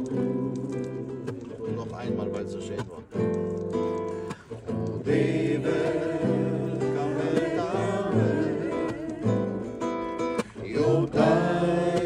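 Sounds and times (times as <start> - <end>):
group singing worship song: 0.0 - 1.4, 4.8 - 12.0
guitar accompaniment: 0.0 - 12.0.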